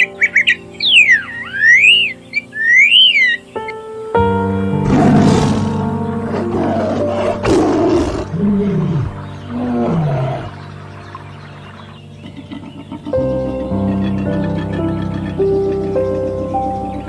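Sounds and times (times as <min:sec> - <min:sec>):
background music: 0:00.0 - 0:17.0
large animal roaring: 0:04.8 - 0:10.6.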